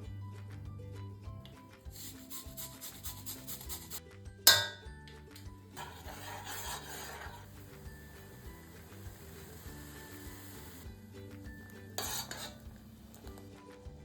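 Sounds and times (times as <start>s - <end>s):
root being grated by hand: 1.9s - 4.0s, 5.8s - 10.9s, 11.8s - 13.4s
sharp clink: 4.5s - 4.9s.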